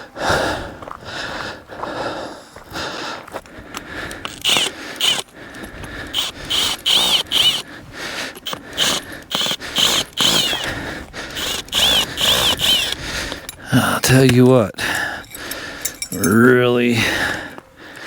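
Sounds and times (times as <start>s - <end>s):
cordless drill motor whine: 3.5s - 13.6s
screw grinding into ground: 4.2s - 5.3s, 6.1s - 7.6s, 8.4s - 10.7s, 11.3s - 13.6s, 15.0s - 16.7s.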